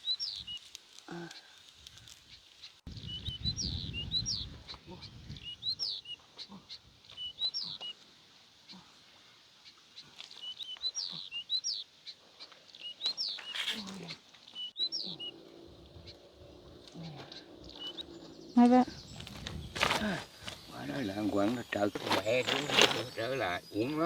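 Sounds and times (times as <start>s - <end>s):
small bird chirping: 0.0s - 24.0s.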